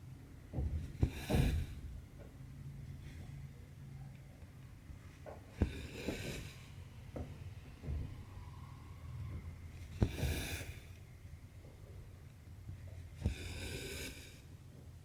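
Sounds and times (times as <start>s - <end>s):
needle popping through fabric: 9.8s - 11.0s
thread swishing through cloth: 9.8s - 11.0s.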